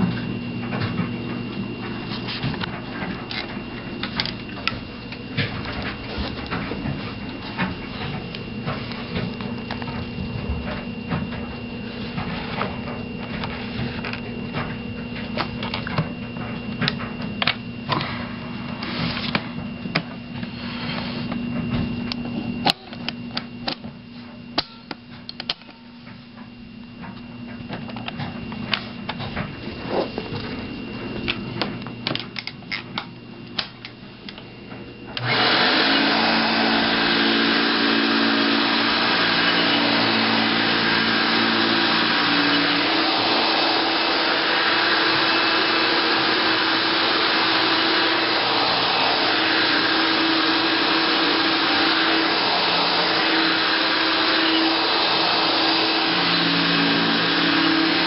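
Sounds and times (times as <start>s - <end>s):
vacuum cleaner running: 0.0s - 58.0s.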